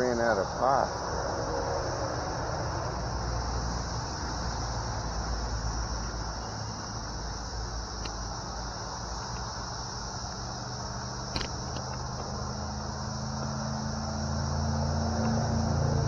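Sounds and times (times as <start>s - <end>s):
insects chirring: 0.0s - 16.0s.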